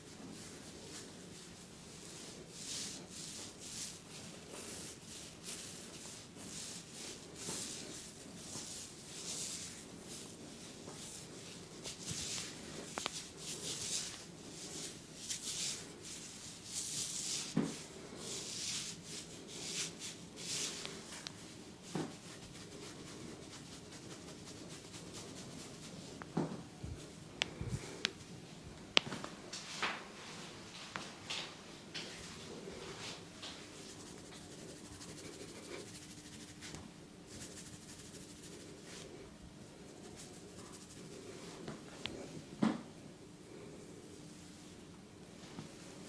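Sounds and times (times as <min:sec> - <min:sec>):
hands brushing over hair: 0:32.9 - 0:39.1.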